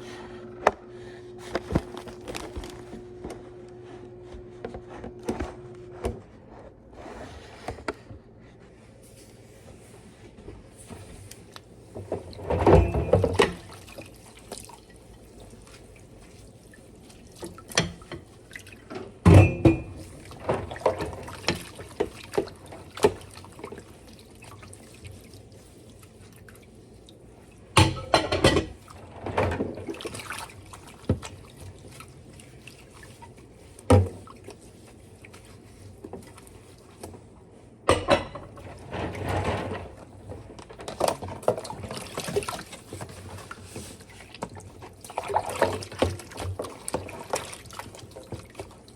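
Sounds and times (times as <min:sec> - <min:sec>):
dishes knocking and clattering: 0:17.7 - 0:18.3, 0:19.2 - 0:21.7, 0:27.8 - 0:29.8, 0:37.9 - 0:40.0
water splashing: 0:29.7 - 0:37.0, 0:40.8 - 0:48.9.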